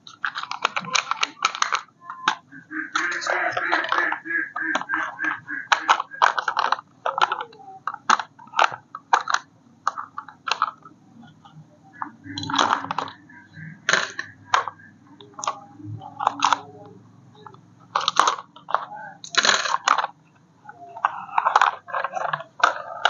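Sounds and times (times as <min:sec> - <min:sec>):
sharp clicks and crackles: 0:00.0 - 0:23.0.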